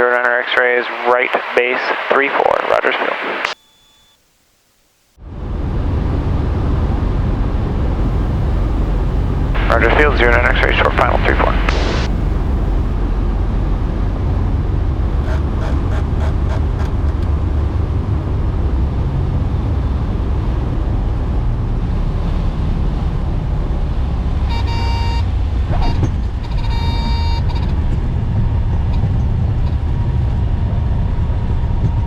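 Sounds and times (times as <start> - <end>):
aircraft engine and airflow drone: 0.0 - 3.6, 5.2 - 32.0
short pitched tone: 8.0 - 12.9.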